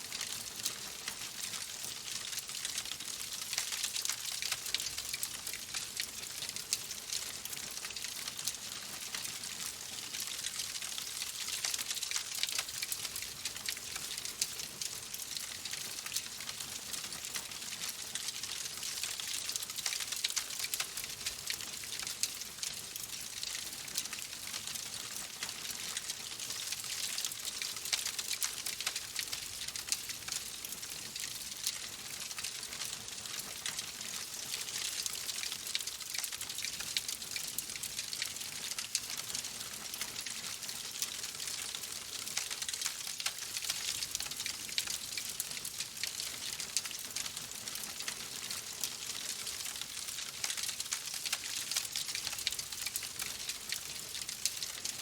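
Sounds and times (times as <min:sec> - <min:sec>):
wood fire crackling: 0:41.4 - 0:44.2.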